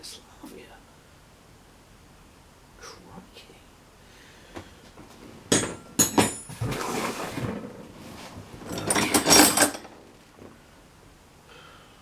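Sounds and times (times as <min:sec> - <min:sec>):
metal hand tools clinking: 0:08.7 - 0:09.9.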